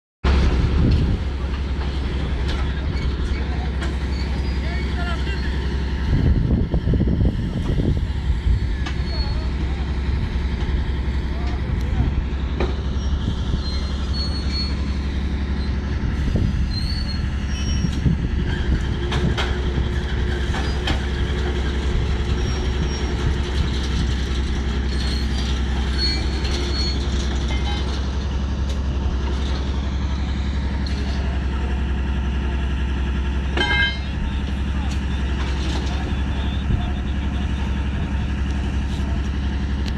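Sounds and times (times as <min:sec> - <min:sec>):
train rumbling on track: 0:00.2 - 0:39.9
metallic wheel squeals: 0:02.5 - 0:06.0, 0:08.6 - 0:10.1, 0:12.8 - 0:28.2, 0:33.6 - 0:39.2.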